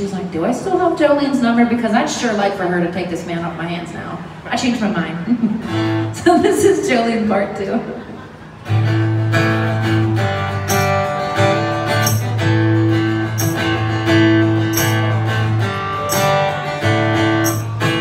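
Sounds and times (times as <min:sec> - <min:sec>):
acoustic guitar strumming: 0:05.6 - 0:06.2, 0:08.4 - 0:18.0.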